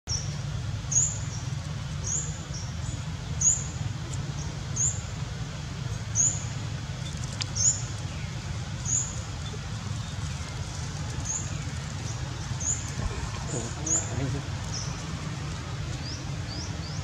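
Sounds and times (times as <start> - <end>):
low rumble: 8.0 - 17.0.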